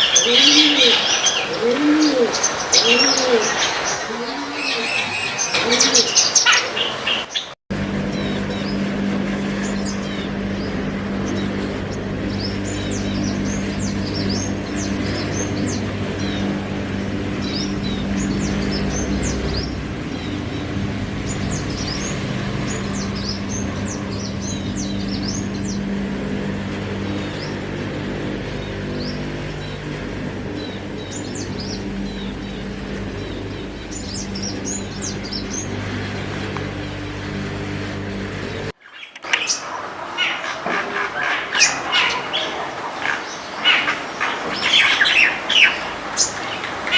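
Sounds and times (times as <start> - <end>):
low machine hum: 0.0 - 6.3, 7.7 - 38.8
small birds chirping: 0.0 - 8.8, 9.5 - 46.9.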